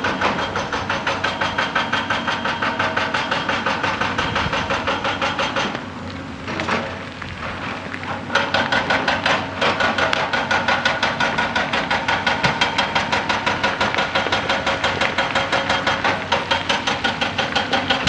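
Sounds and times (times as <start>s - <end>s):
excavator engine running: 0.0s - 18.0s
hydraulic breaker hammering rock: 0.0s - 18.0s.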